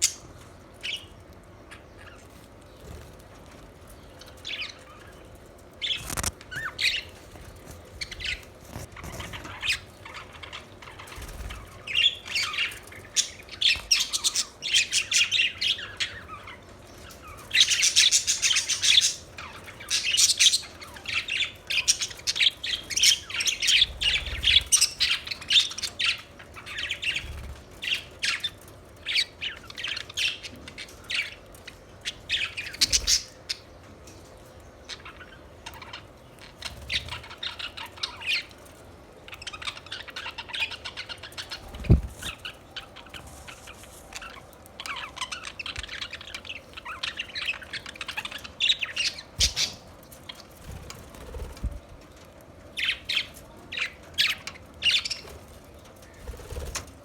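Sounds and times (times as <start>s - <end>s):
budgerigars chirping and chattering: 0.0s - 33.7s, 34.7s - 38.6s, 39.3s - 51.9s, 52.8s - 56.9s.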